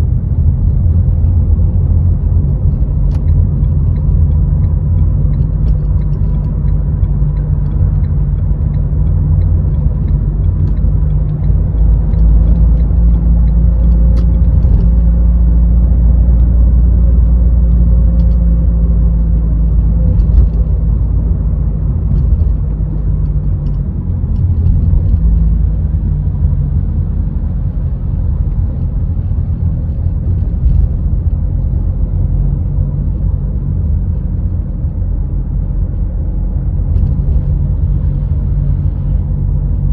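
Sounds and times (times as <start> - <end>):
engine and road noise rumble: 0.0 - 39.9
light ticks: 1.2 - 15.3.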